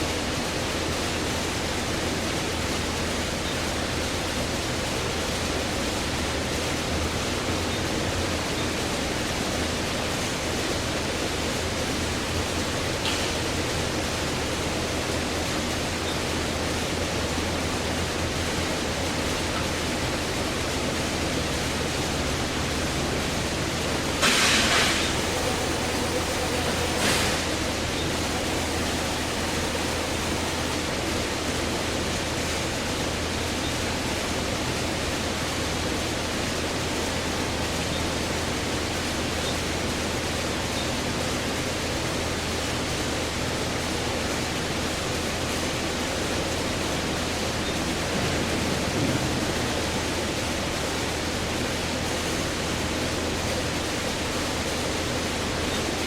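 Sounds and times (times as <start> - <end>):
steady hiss: 11.2 - 34.6
short loud hisses: 24.2 - 25.9
low hum: 24.9 - 32.9.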